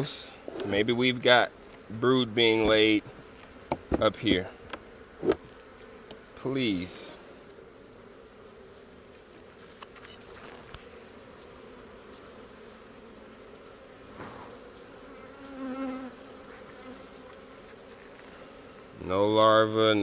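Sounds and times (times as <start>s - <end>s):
honeybees buzzing: 0.0s - 20.0s.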